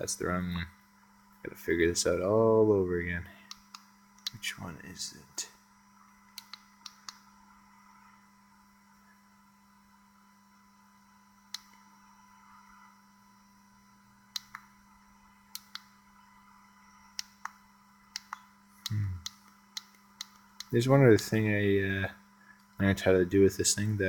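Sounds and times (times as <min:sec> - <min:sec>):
faint steady hum: 0:00.0 - 0:24.0
oscilloscope button clicks: 0:06.3 - 0:07.2, 0:14.4 - 0:14.7, 0:17.2 - 0:20.7.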